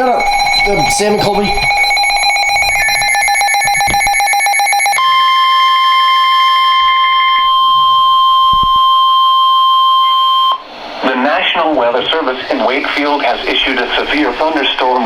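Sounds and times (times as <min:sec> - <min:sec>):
rapid pulsing buzzing tone: 0:00.0 - 0:11.0
steady warning alarm tone: 0:00.0 - 0:15.0.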